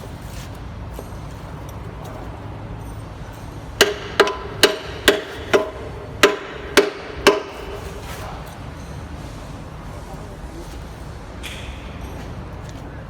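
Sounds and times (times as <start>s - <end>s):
hammer striking metal: 3.8s - 8.1s.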